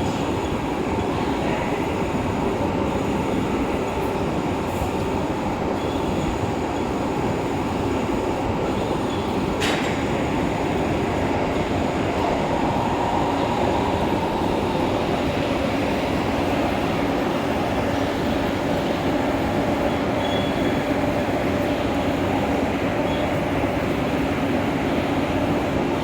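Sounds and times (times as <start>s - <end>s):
faint continuous whine: 8.4s - 26.0s
lathe grinding rumble: 10.0s - 19.8s.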